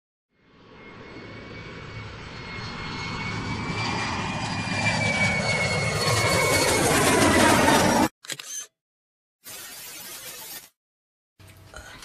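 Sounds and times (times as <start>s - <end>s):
aircraft engine whine: 0.3s - 8.2s.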